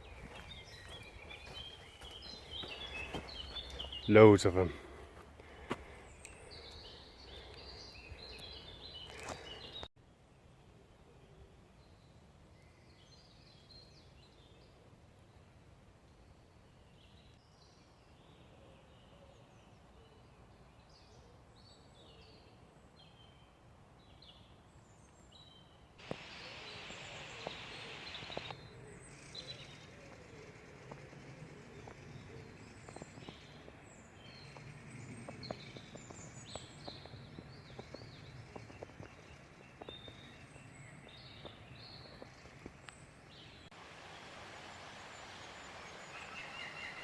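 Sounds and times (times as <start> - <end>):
footsteps on woodland floor: 0.0 - 6.7, 9.0 - 9.9, 34.4 - 40.4
small birds chirping: 0.0 - 9.9, 16.2 - 47.0.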